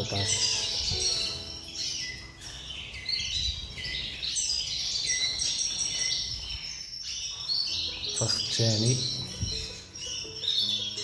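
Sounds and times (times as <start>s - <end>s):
finch singing twittering song: 0.0s - 11.0s.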